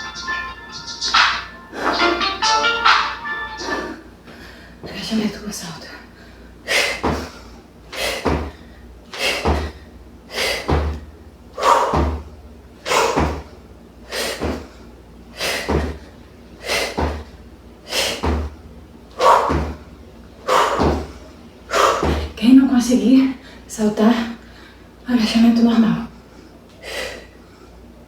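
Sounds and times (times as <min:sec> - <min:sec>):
feet landing with a thud: 0:06.7 - 0:14.8, 0:15.4 - 0:22.4.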